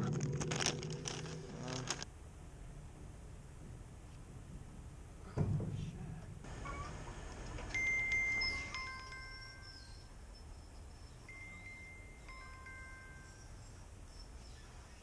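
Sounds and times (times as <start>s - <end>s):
dull thump: 5.3s - 6.0s
wind chimes ringing: 7.6s - 14.5s.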